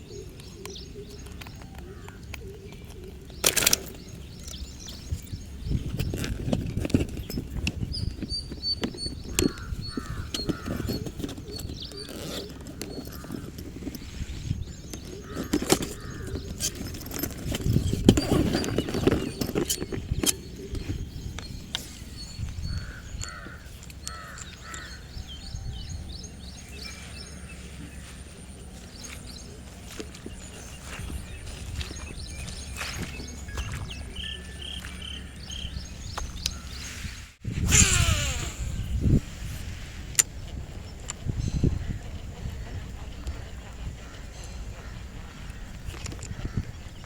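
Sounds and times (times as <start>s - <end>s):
small birds chirping: 0.0s - 47.0s
crows cawing: 9.4s - 11.0s, 15.2s - 16.3s, 22.8s - 25.2s.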